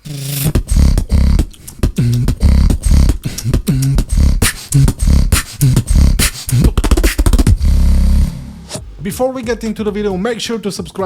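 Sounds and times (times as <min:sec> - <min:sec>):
sharp percussive mouth clicks: 0:00.0 - 0:07.5
beatboxing snore bass: 0:00.0 - 0:08.3.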